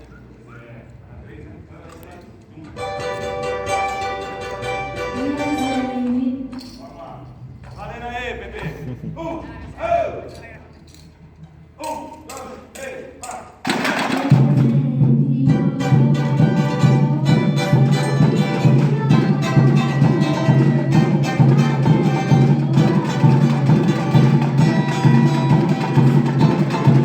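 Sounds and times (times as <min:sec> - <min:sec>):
band playing: 0:02.8 - 0:06.1, 0:13.7 - 0:27.0.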